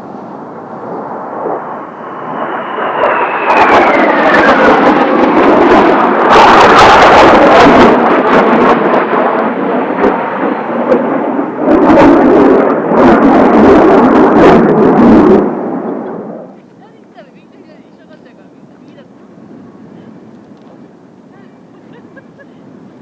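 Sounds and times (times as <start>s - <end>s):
jet turbofan whine: 0.0s - 23.0s
loud jet roar: 0.0s - 23.0s.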